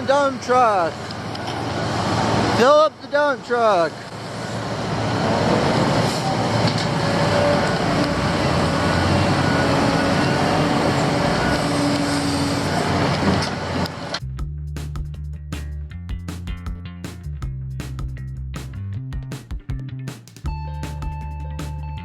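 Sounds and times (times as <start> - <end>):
diesel machinery engine drone: 0.0 - 14.3
music: 14.2 - 22.0.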